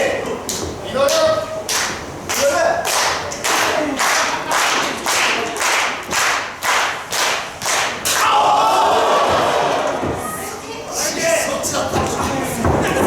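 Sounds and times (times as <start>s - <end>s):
crowd clapping in rhythm: 0.5s - 8.4s
crowd shouting and cheering: 7.9s - 10.6s.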